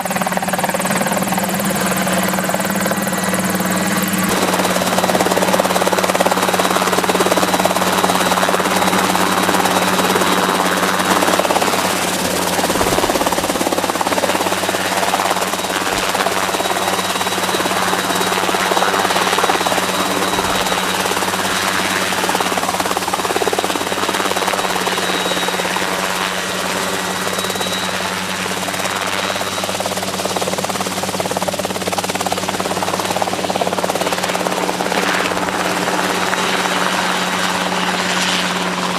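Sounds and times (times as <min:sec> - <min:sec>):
helicopter engine and rotor hum: 0:00.0 - 0:38.9
faint high whine: 0:01.1 - 0:31.2.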